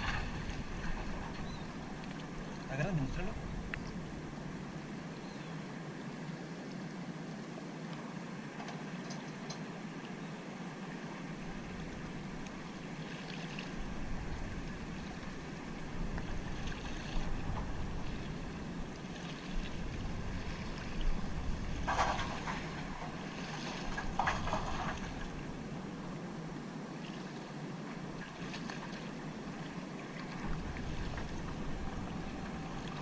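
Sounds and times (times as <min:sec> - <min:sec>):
rustles or splashes: 0:00.0 - 0:02.8, 0:19.0 - 0:25.6, 0:28.1 - 0:33.0
wind buffeting microphone: 0:13.8 - 0:25.6.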